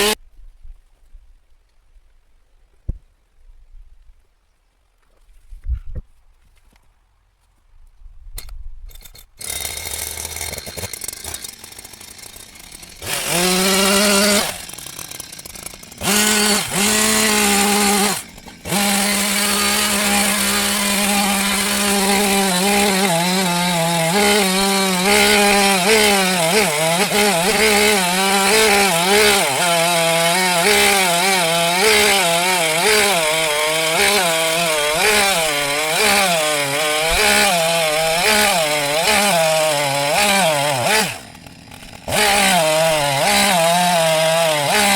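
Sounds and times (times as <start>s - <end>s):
chainsaw cutting wood: 8.9s - 44.9s
chainsaw engine revving: 9.1s - 44.9s.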